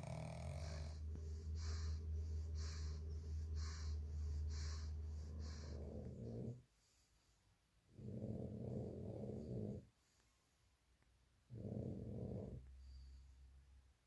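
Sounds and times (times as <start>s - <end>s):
dog snoring: 0.0s - 7.0s, 7.9s - 10.2s, 11.5s - 13.3s
quiet breathing: 0.0s - 14.0s.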